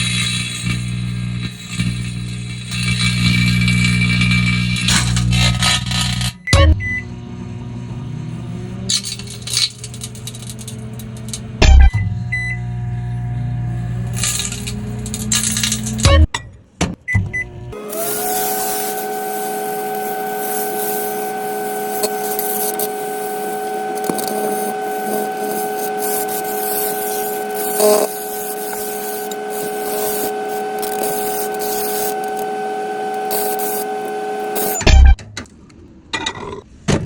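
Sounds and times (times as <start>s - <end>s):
crackle: 0.0s - 6.4s, 14.0s - 16.1s, 17.9s - 34.9s
microwave oven humming: 6.4s - 16.3s, 17.0s - 35.2s.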